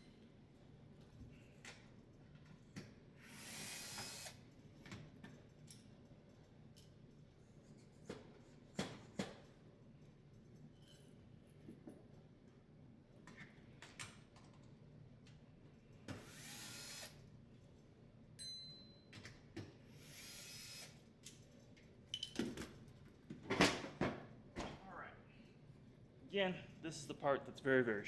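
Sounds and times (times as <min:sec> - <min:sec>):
electric screwdriver running: 0:03.3 - 0:04.4, 0:16.2 - 0:17.2, 0:20.0 - 0:20.9.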